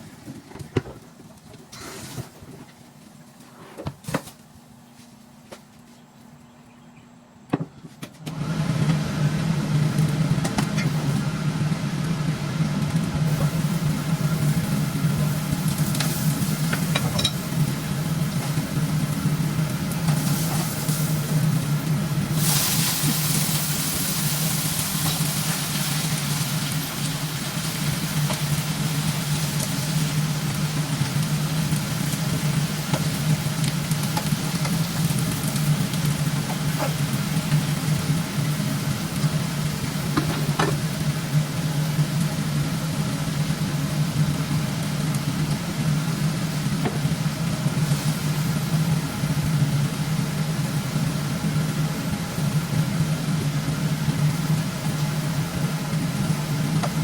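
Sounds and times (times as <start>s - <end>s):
range hood fan humming: 0.0s - 57.0s
food sizzling in a pan: 13.2s - 57.0s.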